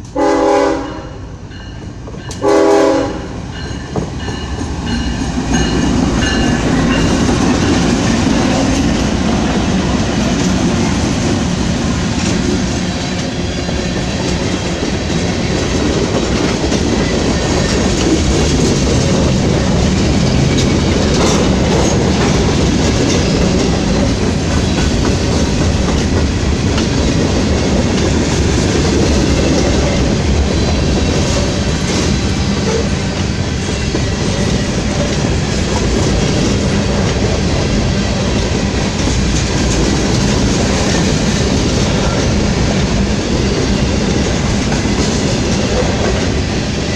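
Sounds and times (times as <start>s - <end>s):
train rumble: 0.0s - 46.9s
steel wheels clacking over rail joints: 3.7s - 46.9s.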